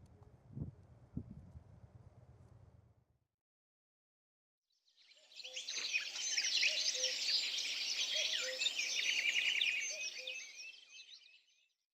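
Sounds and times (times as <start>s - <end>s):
small birds chirping: 5.0s - 11.6s.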